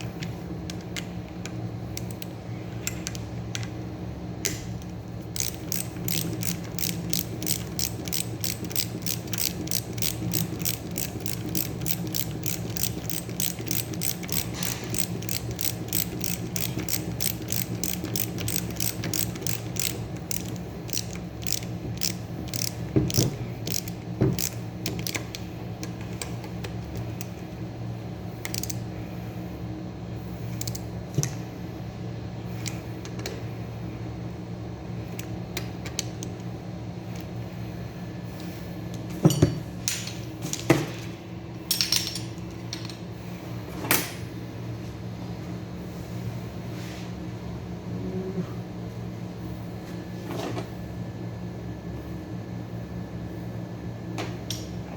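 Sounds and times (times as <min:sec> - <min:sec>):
steady low hum: 0:00.0 - 0:54.9
ratchet wrench clicking: 0:05.3 - 0:25.4, 0:28.4 - 0:28.8, 0:30.6 - 0:30.8.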